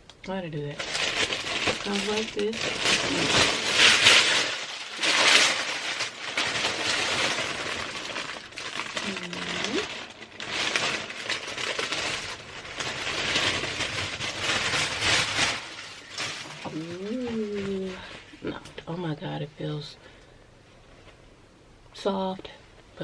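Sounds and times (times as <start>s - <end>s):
paper packaging crinkling: 0.6s - 18.6s.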